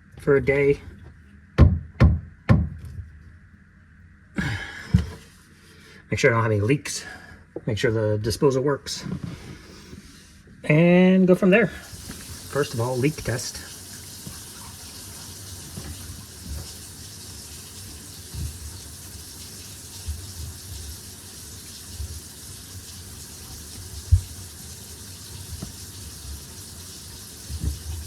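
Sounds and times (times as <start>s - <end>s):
dull low knocks: 1.6s - 3.0s
tap water running into sink: 11.8s - 28.0s.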